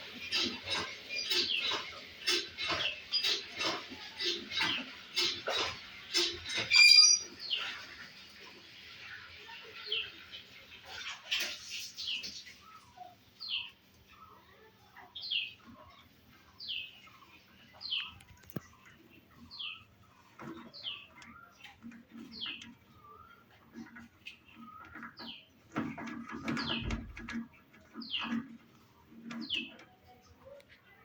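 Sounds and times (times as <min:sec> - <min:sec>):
parrot high chirps: 0:06.7 - 0:07.3.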